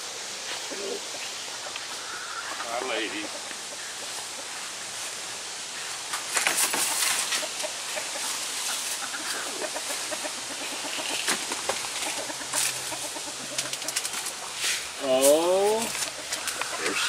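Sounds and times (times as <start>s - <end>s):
hens clucking: 0.0s - 17.0s
rustling: 4.0s - 17.0s.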